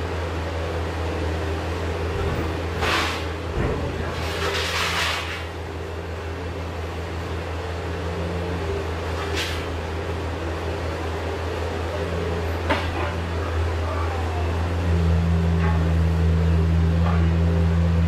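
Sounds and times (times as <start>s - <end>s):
vehicle engine idling: 5.2s - 18.0s.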